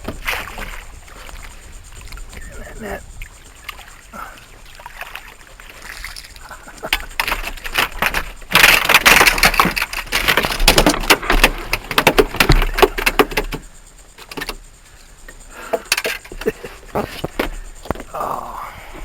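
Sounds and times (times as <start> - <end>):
fish thrashing in a net: 4.7 - 13.4.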